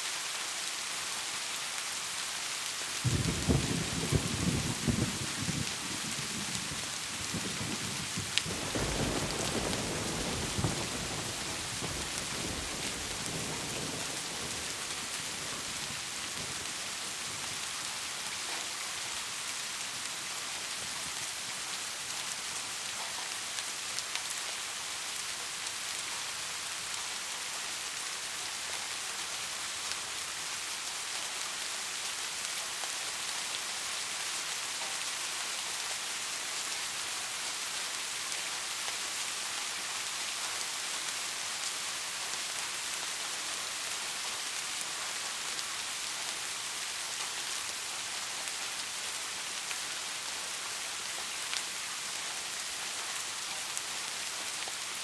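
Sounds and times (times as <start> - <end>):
heavy rain hissing: 0.0 - 32.4
low roll of thunder: 3.0 - 16.6.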